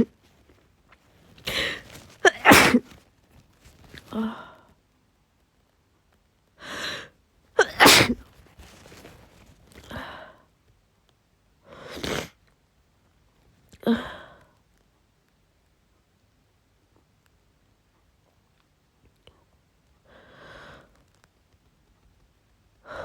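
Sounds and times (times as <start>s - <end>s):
woman sneezing: 1.5s - 2.9s, 7.6s - 8.2s.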